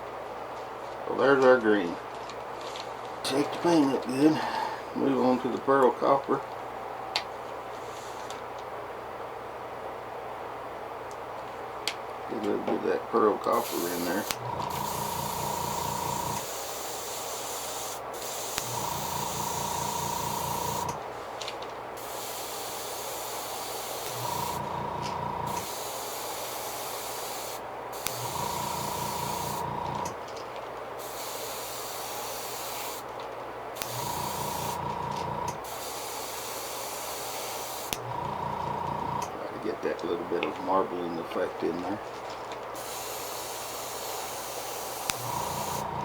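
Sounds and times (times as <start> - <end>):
low hum with higher whine: 0.0 - 16.5, 24.0 - 25.6, 27.6 - 31.0, 33.1 - 35.6
airbrush spraying hiss: 7.8 - 8.4, 13.5 - 21.3, 22.0 - 30.2, 31.0 - 33.1, 33.8 - 38.0, 42.8 - 46.0.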